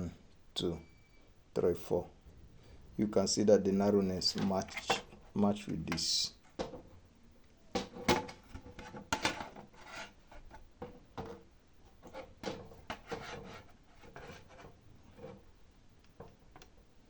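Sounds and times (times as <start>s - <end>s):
rubbing scrapes: 8.8s - 10.6s, 12.0s - 15.4s.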